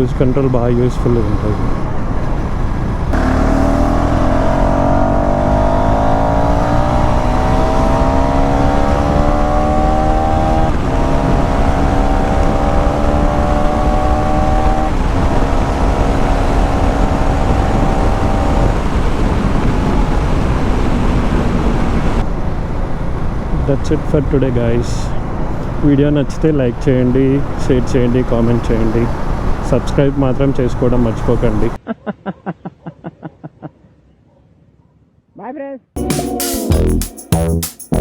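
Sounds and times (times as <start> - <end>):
wind rumble: 0.0 - 25.9
motorcycle engine accelerating: 2.8 - 22.2, 36.0 - 38.0.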